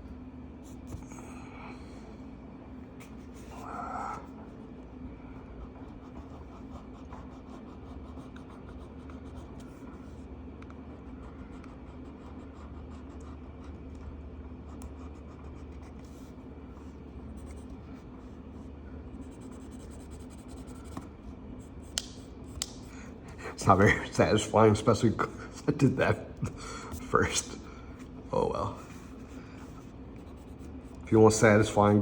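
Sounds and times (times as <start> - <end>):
low background hum: 0.0 - 32.0
marker scratching on paper: 5.6 - 10.2, 11.0 - 13.8, 14.7 - 16.4, 19.2 - 22.8, 28.9 - 31.6.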